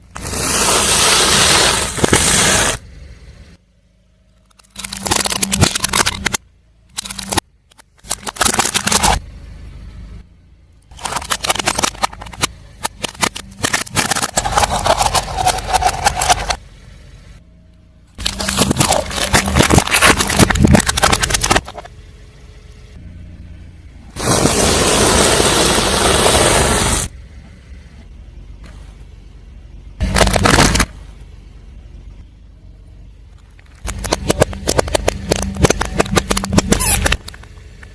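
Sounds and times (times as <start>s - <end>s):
car engine hum: 0.0s - 37.9s
tyre crushing crunchy objects: 18.2s - 21.8s, 30.0s - 31.0s, 33.8s - 37.5s.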